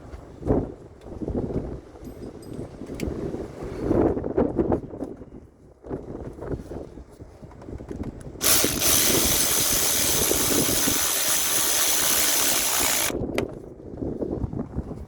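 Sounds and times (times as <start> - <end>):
loud even hiss: 8.4 - 13.2.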